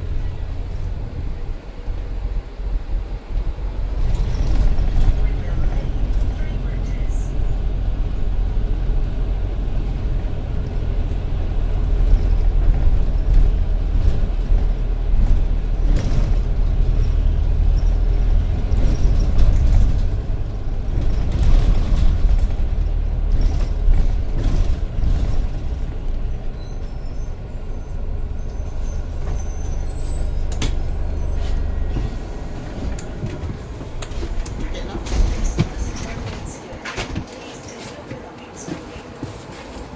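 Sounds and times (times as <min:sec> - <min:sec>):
bus engine and road rumble: 0:00.0 - 0:39.9
knocks and rattles: 0:10.7 - 0:37.4.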